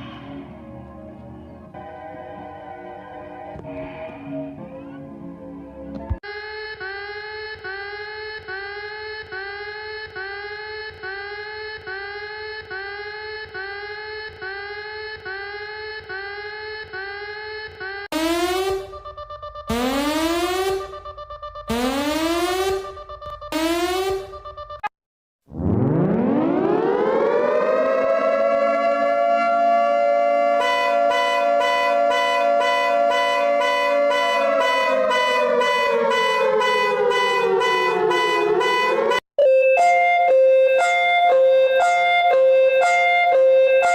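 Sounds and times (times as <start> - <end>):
emergency siren wailing: 0.0 - 24.9, 25.5 - 43.9
pulsing high tone: 6.3 - 24.9, 25.5 - 43.9
electronic alarm beeps: 18.1 - 24.9, 35.7 - 43.9.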